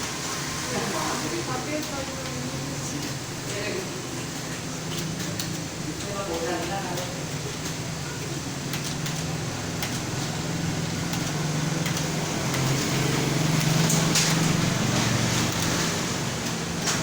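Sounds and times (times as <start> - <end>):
fan humming: 0.0 - 17.0
keyboard keys clicking: 4.9 - 14.8.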